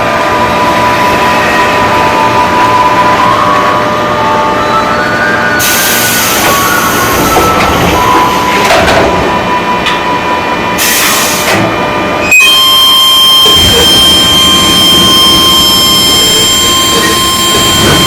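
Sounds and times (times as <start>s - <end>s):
electric train rumbling: 0.0s - 18.0s
high whine: 0.0s - 18.0s.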